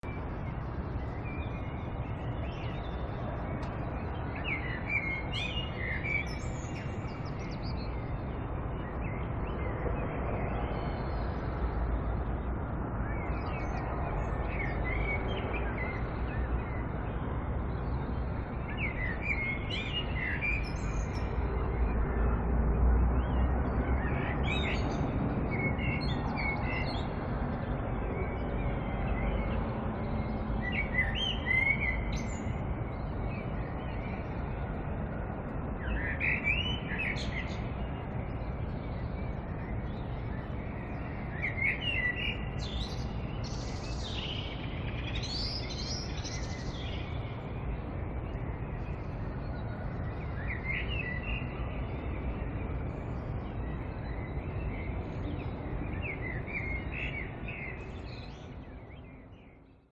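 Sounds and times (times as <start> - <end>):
outdoor ambience hiss: 0.0 - 59.9
birds chirping: 35.7 - 59.9.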